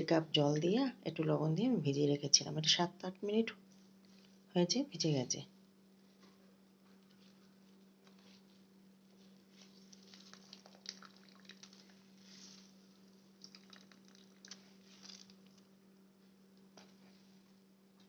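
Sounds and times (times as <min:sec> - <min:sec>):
steady low hum: 0:00.0 - 0:18.0
wet squelching and dripping: 0:09.6 - 0:15.7.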